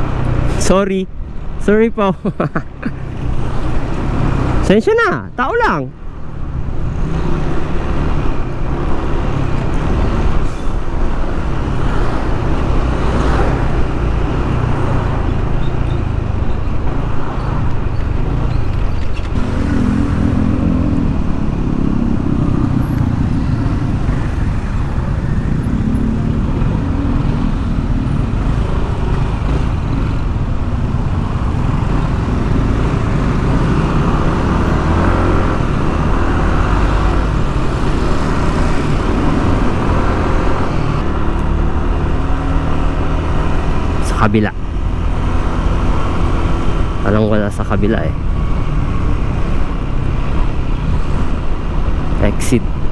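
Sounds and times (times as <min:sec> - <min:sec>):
surrounding vehicles: 0:00.0 - 0:52.9.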